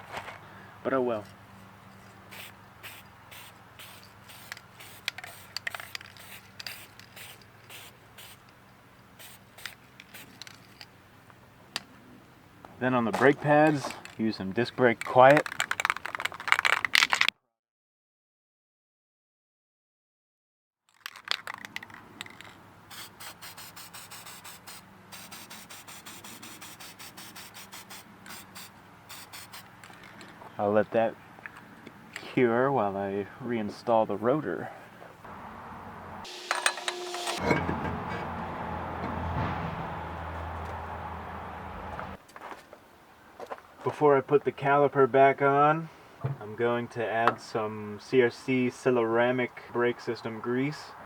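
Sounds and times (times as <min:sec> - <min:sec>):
short scratchy strokes: 0:36.3 - 0:37.4.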